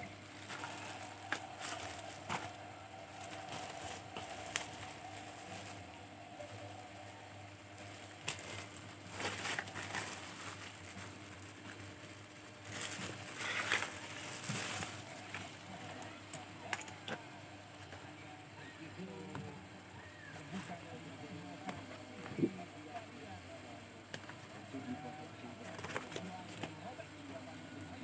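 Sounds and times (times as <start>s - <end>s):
plastic packaging crinkling: 0.3s - 17.2s, 25.0s - 26.8s.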